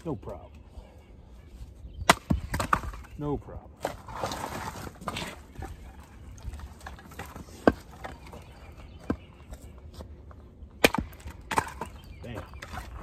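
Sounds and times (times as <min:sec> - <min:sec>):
blade chopping wood: 0:02.1 - 0:03.2, 0:10.8 - 0:13.0.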